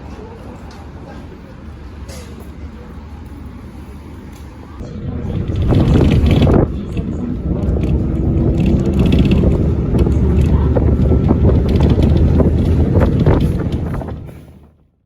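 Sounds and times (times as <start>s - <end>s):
wind buffeting microphone: 4.8s - 14.8s
steady low rumble: 4.8s - 15.0s.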